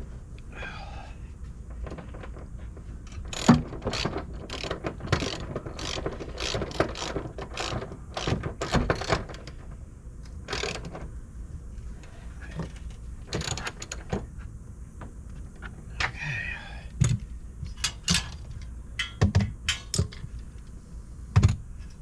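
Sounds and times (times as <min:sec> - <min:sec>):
ratchet wrench clicking: 0:03.3 - 0:08.3, 0:12.7 - 0:14.1
metal clinks and knocks: 0:12.6 - 0:14.2.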